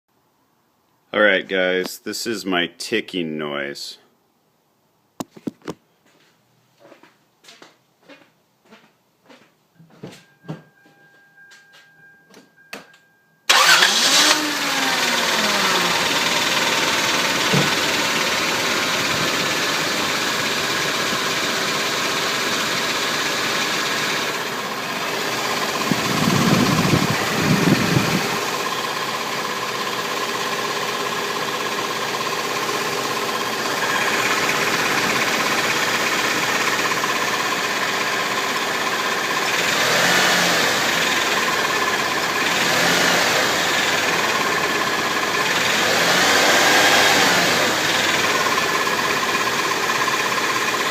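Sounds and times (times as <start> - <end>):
car engine starting and idling: 13.5 - 50.9
engine ticking: 13.5 - 50.9.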